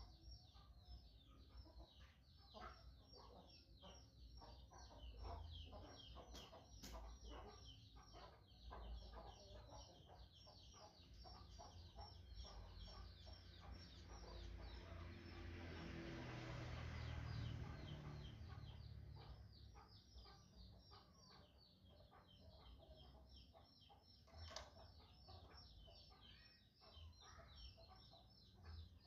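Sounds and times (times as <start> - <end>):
rapid bird chirping: 0.0 - 29.0.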